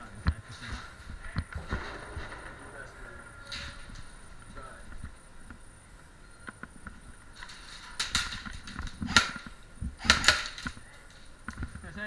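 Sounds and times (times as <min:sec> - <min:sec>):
rustling: 0:00.0 - 0:12.0
sharp cracks: 0:00.5 - 0:11.8.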